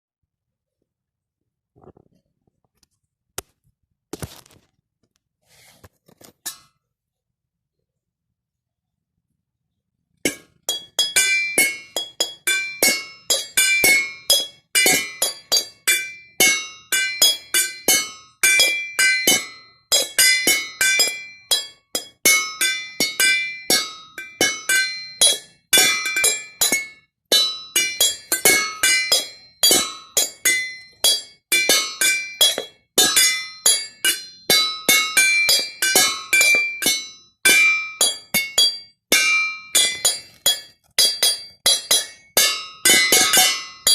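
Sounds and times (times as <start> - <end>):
glasses clinking a tune: 10.3 - 43.9.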